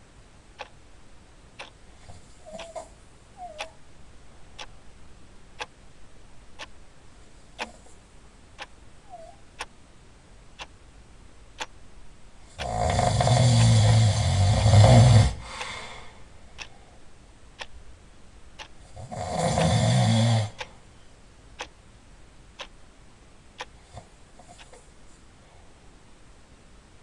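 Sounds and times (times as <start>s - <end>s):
clock ticking: 0.6s - 0.8s, 1.6s - 1.8s, 2.4s - 3.8s, 4.6s - 4.8s, 5.6s - 5.8s, 6.6s - 6.8s, 7.6s - 7.8s, 8.6s - 8.8s, 9.6s - 9.8s, 10.6s - 10.8s, 11.6s - 11.8s, 12.6s - 15.0s, 17.6s - 17.9s, 18.6s - 20.7s, 21.6s - 21.8s, 22.6s - 22.8s, 23.6s - 23.8s, 24.6s - 24.8s
loud snores: 12.6s - 15.6s, 19.0s - 20.6s.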